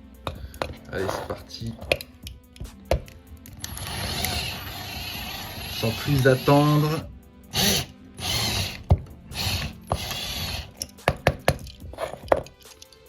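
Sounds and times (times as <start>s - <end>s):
drill grinding into metal: 3.6s - 10.9s.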